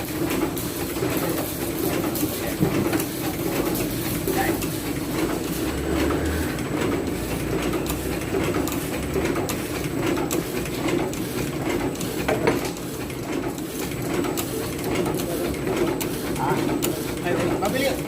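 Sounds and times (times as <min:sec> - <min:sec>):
cutting machine drone: 0:05.6 - 0:07.2.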